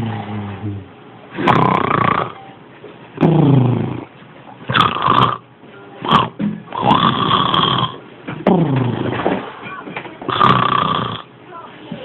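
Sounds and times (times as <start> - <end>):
person snoring: 0.0 - 2.4, 3.2 - 4.1, 4.7 - 5.4, 6.1 - 9.2, 10.3 - 11.3.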